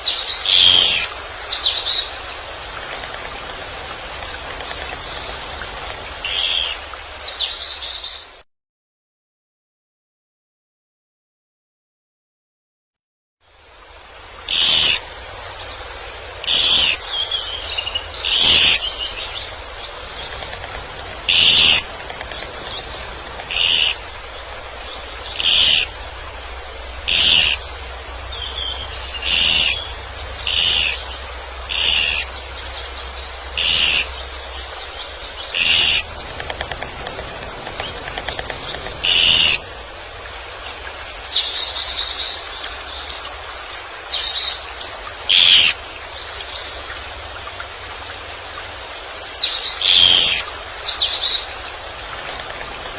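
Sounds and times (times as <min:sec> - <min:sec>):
bird chattering call: 0:00.4 - 0:01.1, 0:14.5 - 0:15.0, 0:16.4 - 0:17.0, 0:17.7 - 0:19.5, 0:20.1 - 0:24.1, 0:24.9 - 0:25.9, 0:27.0 - 0:27.6, 0:28.4 - 0:31.0, 0:31.7 - 0:32.4, 0:33.6 - 0:34.2, 0:35.4 - 0:39.7, 0:45.3 - 0:45.8, 0:49.8 - 0:50.4
bird twittering: 0:00.4 - 0:02.0, 0:06.2 - 0:06.8, 0:14.5 - 0:15.0, 0:16.4 - 0:26.0, 0:27.0 - 0:27.7, 0:28.3 - 0:39.7, 0:45.3 - 0:45.8, 0:49.7 - 0:51.4.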